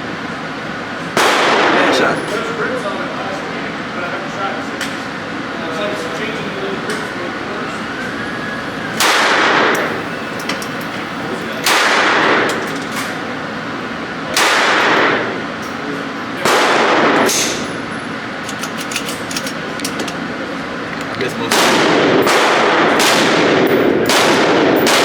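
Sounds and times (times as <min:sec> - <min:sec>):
echoing gunshots: 0:01.2 - 0:02.1, 0:09.0 - 0:10.0, 0:11.7 - 0:12.5, 0:14.4 - 0:15.3, 0:16.4 - 0:17.6, 0:21.5 - 0:25.0.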